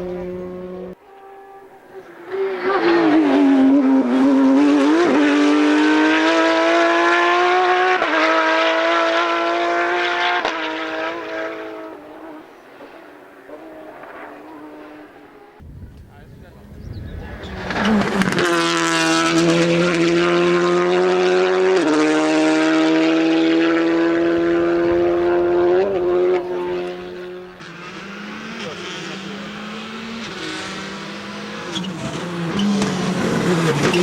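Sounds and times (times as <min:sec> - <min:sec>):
rally car engine at full throttle: 0:00.0 - 0:16.1, 0:16.8 - 0:34.0.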